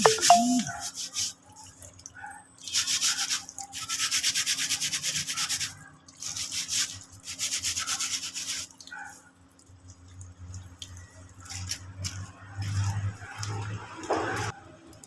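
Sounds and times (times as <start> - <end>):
hand sanding with sandpaper: 0.2 - 1.4, 2.6 - 8.7.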